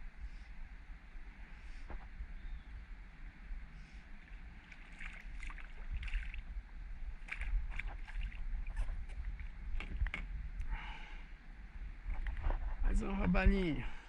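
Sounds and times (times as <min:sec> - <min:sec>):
wind rumble on microphone: 0:00.0 - 0:14.0
water splashing: 0:04.2 - 0:06.5, 0:07.2 - 0:10.2.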